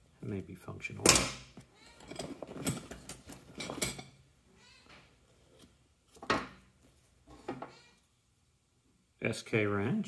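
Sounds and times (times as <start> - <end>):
metal tools knocking and clinking: 2.0 - 4.2.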